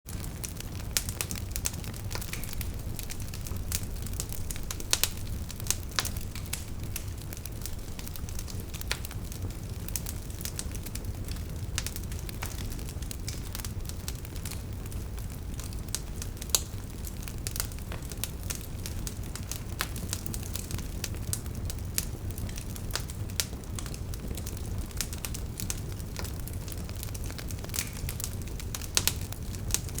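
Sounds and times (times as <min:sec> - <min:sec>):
logs crackling and popping: 0:00.1 - 0:30.0
low rumble of flame: 0:00.1 - 0:30.0.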